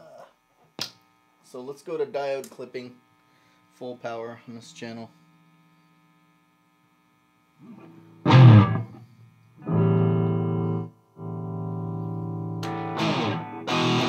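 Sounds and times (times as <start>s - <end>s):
distorted electric guitar chords: 7.6s - 14.0s.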